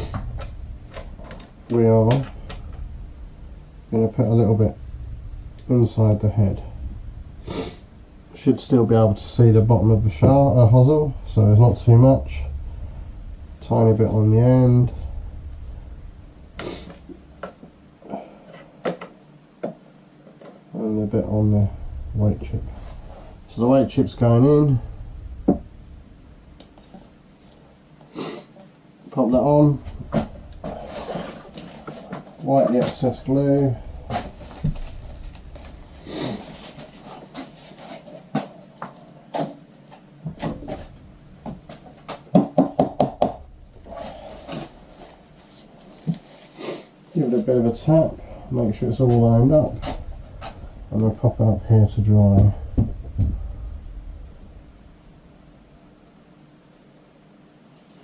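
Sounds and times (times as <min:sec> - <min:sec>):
loud knocks: 0:24.2 - 0:26.1, 0:32.8 - 0:36.0, 0:40.2 - 0:44.8, 0:52.0 - 0:54.4.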